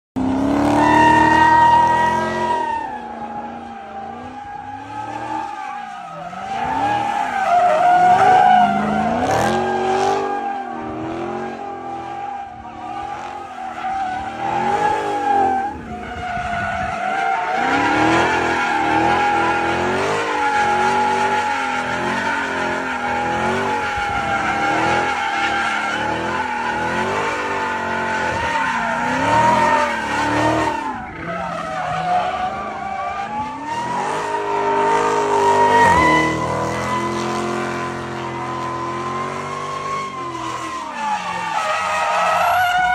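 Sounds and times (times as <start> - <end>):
car engine revving: 0.2 - 42.9
tyres squealing: 13.6 - 42.9.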